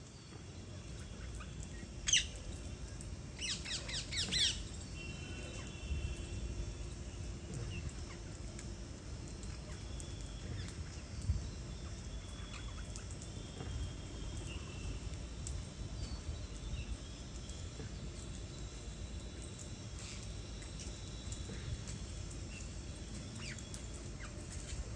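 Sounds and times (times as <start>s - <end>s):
birds calling: 3.4s - 5.8s.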